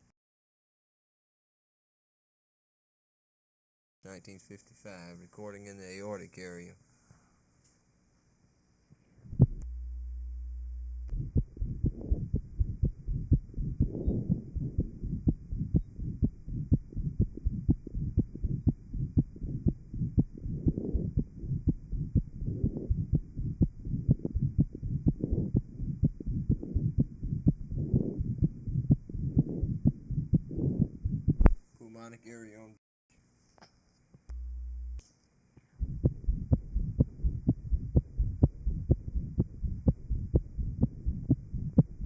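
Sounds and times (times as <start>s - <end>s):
steady low hum: 8.9s - 31.6s, 34.2s - 42.0s
heart murmur: 9.3s - 9.8s, 11.0s - 31.6s, 35.8s - 42.0s
sharp heartbeats: 9.3s - 31.6s, 35.8s - 42.0s.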